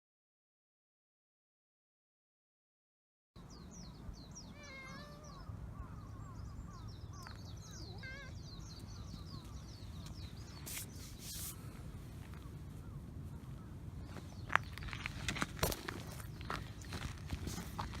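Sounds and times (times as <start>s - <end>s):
cat meowing: 4.5s - 5.5s, 7.7s - 8.4s.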